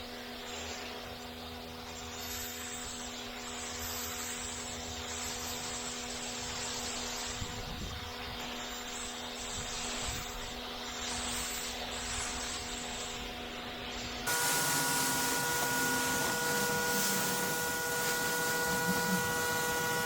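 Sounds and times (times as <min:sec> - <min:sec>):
pressure washer motor hum: 0:14.3 - 0:20.0
water jet hissing: 0:14.3 - 0:20.0.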